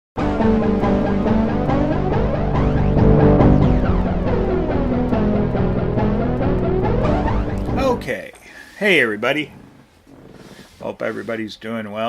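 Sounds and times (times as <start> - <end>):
intro music with heavy beat: 0.2 - 8.0.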